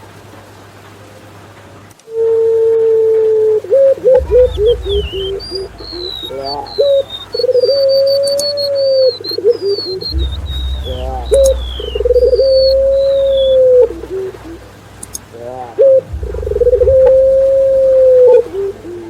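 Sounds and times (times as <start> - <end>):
doves cooing: 3.7 - 15.2
high falling whistled bird notes: 4.1 - 15.3.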